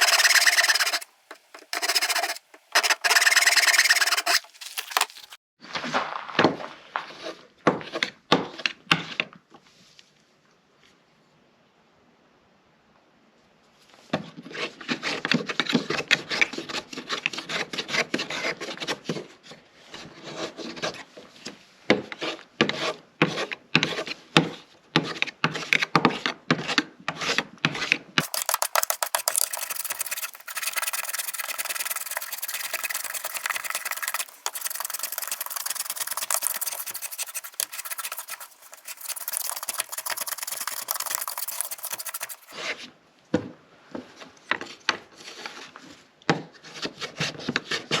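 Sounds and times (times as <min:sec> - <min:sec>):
hand tool scraping wood: 0:00.0 - 0:05.4, 0:28.2 - 0:42.8.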